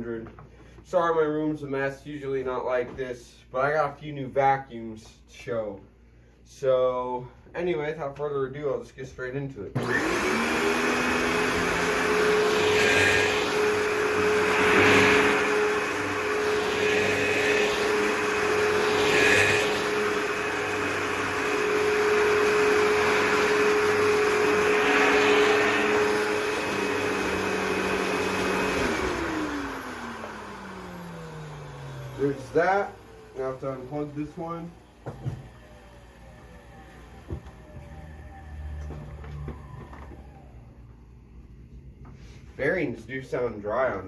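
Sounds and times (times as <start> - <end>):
vacuum cleaner motor whine: 9.8 - 41.4.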